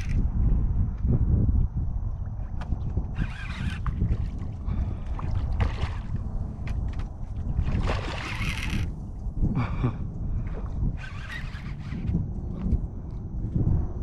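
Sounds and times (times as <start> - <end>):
wind rumbling on microphone: 0.0 - 14.0
water splashing around boat: 3.2 - 8.9.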